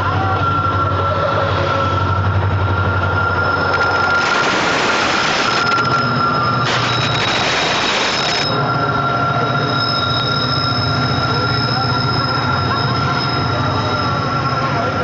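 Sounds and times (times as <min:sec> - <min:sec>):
high wheel squeal: 0:00.0 - 0:15.0
train wheels rumbling on rails: 0:00.0 - 0:15.0
harsh rushing noise: 0:01.7 - 0:08.7.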